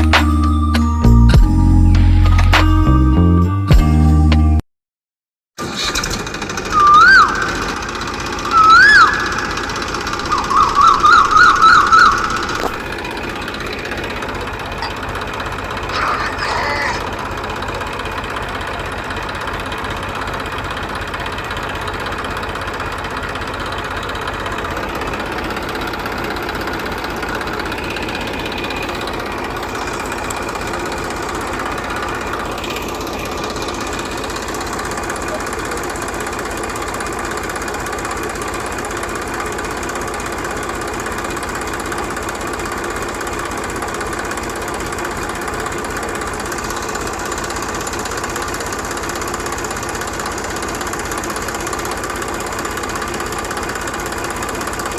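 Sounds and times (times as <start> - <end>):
small engine running: 5.6 - 54.9
warbling whistles: 6.6 - 12.8.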